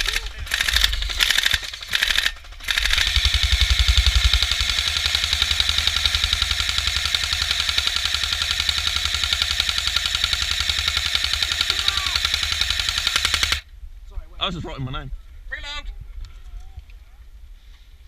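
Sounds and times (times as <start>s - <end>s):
airsoft gun firing full-auto: 0.0s - 13.6s.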